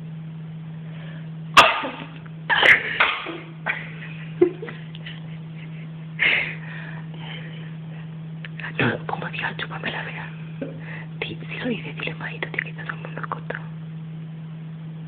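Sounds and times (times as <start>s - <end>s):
low electrical hum: 0.0s - 15.0s
breathy bursts: 6.2s - 8.1s, 10.7s - 11.2s.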